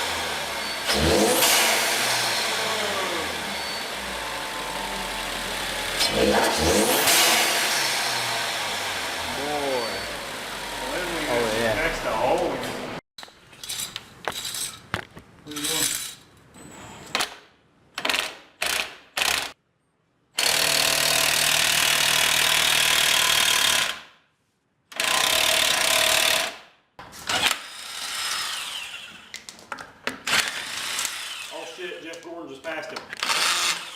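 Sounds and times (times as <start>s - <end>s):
power tool running: 0.0s - 13.0s, 20.4s - 24.0s, 27.3s - 29.3s, 30.3s - 31.9s, 33.2s - 33.9s
tools clicking and clattering: 13.2s - 16.5s.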